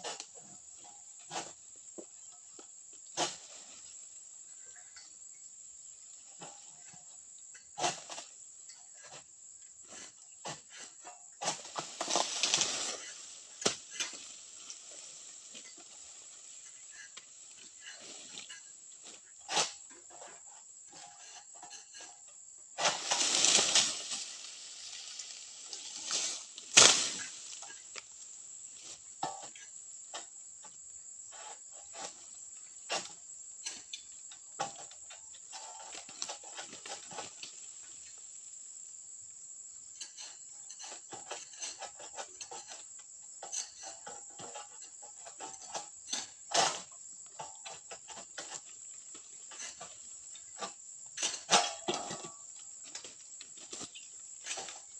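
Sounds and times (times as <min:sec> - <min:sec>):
frond crashing through leaves: 0:11.9 - 0:15.6, 0:22.8 - 0:28.0
sharp crack: 0:26.1 - 0:27.5.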